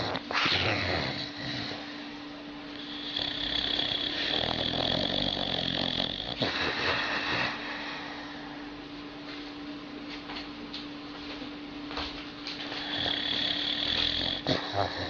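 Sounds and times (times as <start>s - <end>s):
dog snoring: 0.0s - 2.0s, 2.8s - 7.8s, 12.6s - 15.0s.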